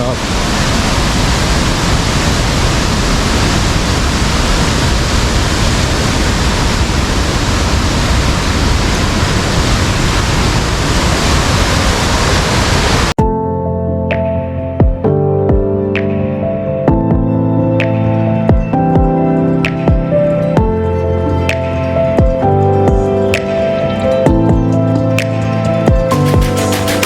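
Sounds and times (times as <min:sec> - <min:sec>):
waterfall rushing: 0:00.0 - 0:13.1.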